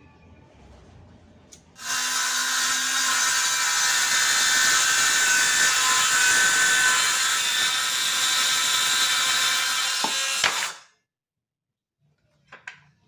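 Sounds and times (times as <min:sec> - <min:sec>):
circular saw running: 0:01.8 - 0:10.8.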